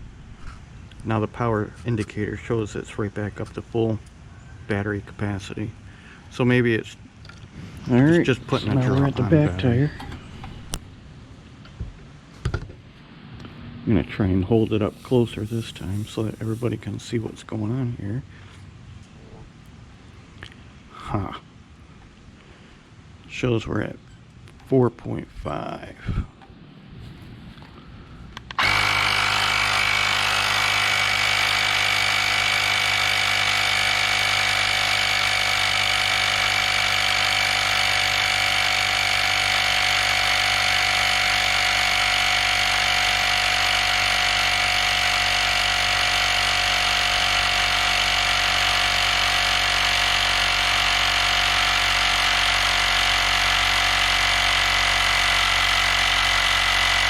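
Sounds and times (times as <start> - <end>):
tyre inflator compressor humming: 14.7 - 17.1, 28.4 - 57.0.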